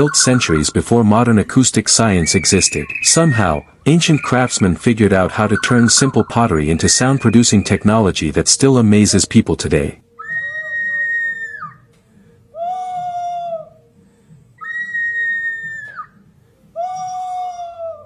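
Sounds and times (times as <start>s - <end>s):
clay whistle animal calls: 0.0s - 1.3s, 1.9s - 8.1s.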